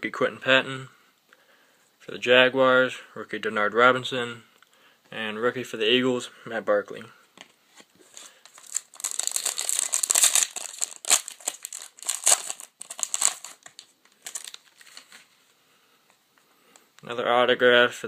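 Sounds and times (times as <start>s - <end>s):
cards rustling: 7.7s - 15.4s
wrapper crinkling and tearing: 8.0s - 15.3s.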